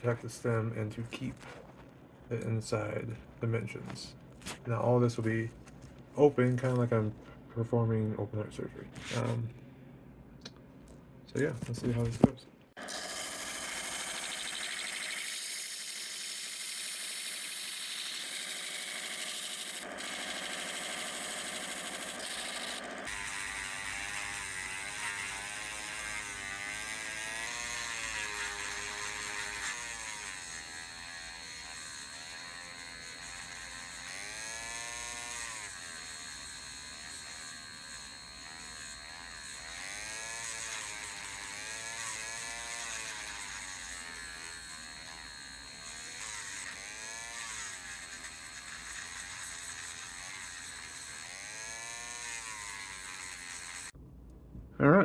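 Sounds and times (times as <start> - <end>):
electric sanding tool whirring: 12.8 - 54.0.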